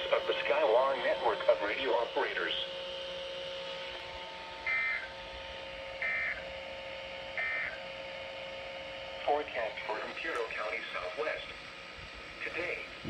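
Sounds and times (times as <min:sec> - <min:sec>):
buzzy digital chirps: 0:04.6 - 0:05.2.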